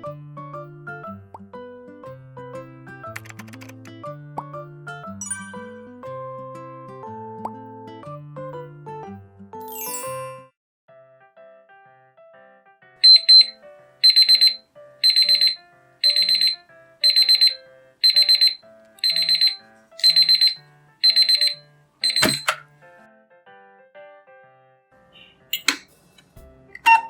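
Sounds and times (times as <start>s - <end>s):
soft simple melody: 0.0s - 27.0s
alarm clock bell ringing: 13.0s - 22.6s.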